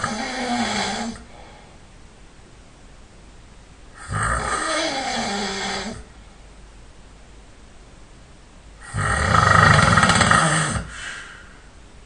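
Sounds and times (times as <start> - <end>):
man snoring: 0.0 - 1.3, 4.0 - 6.1, 8.8 - 11.1.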